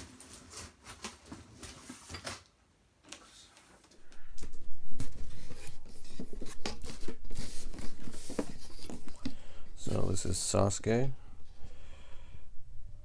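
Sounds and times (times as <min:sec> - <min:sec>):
cardboard boxes being handled: 0:00.0 - 0:02.5, 0:05.0 - 0:09.3.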